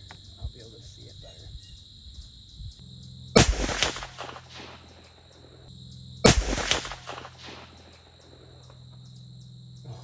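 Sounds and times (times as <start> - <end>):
insects chirping: 0.0 - 10.0
rifle shots with rolling echo: 3.4 - 8.8.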